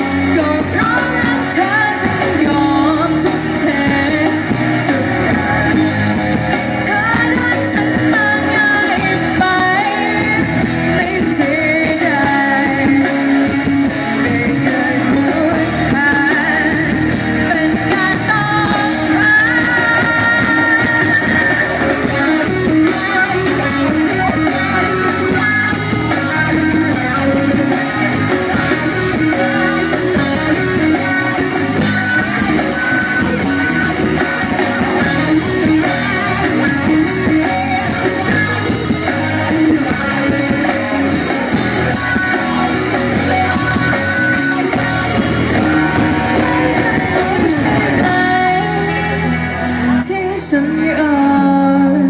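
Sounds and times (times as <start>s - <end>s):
guitar melody: 0.0s - 52.0s
live rock band playing: 0.0s - 52.0s.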